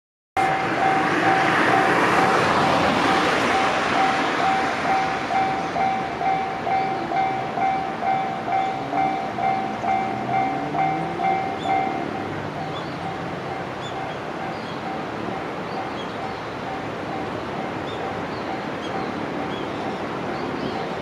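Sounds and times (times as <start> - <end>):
level crossing bell ringing: 0.4 - 2.4, 3.0 - 13.8
train rushing past: 0.4 - 21.0.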